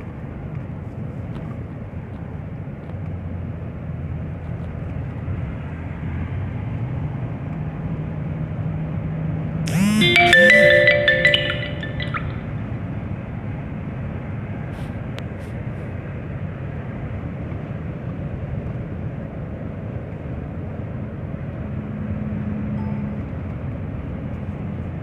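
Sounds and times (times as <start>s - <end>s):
car engine and tyre noise: 0.0s - 9.6s, 14.5s - 25.0s
music jingle: 9.7s - 12.5s.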